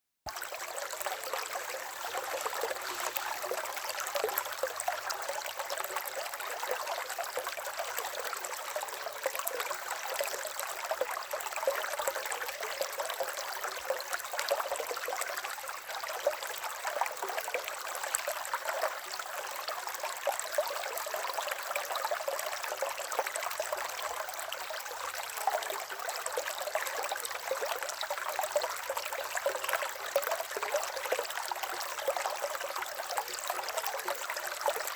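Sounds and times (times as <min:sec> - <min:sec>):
river water babbling: 0:00.4 - 0:10.8.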